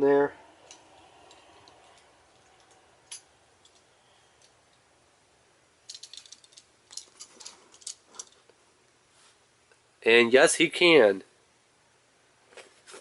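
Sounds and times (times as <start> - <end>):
plastic toy clicking and rattling: 5.9 - 8.4.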